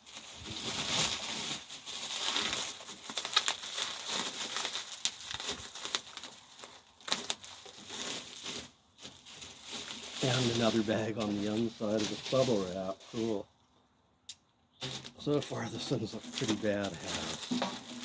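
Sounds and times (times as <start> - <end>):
bubble wrap snaps: 0.0 - 9.2
tape tearing: 0.0 - 13.3, 14.8 - 15.4, 16.0 - 18.0
bubble wrap crinkling: 0.0 - 13.5, 14.8 - 18.0.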